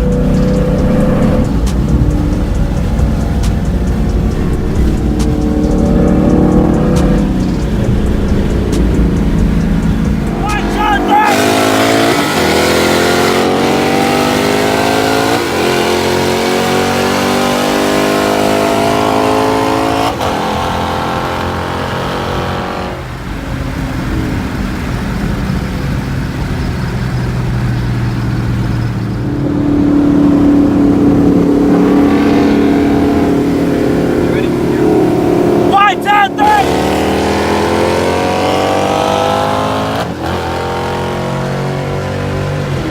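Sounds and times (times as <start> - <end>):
car engine accelerating: 0.0 - 42.9
steady engine drone: 0.0 - 42.9.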